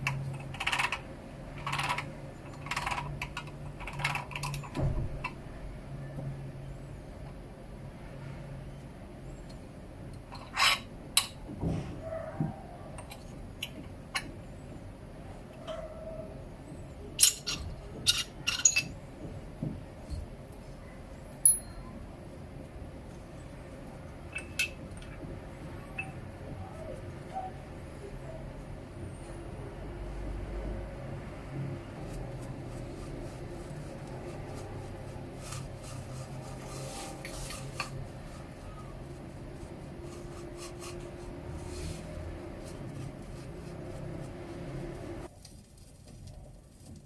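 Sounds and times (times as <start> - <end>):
rubbing and scraping handling sounds: 23.0 - 47.0.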